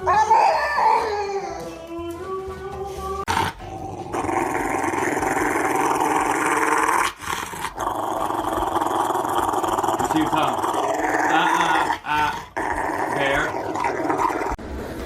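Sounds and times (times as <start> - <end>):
dog growling: 3.2 - 14.6.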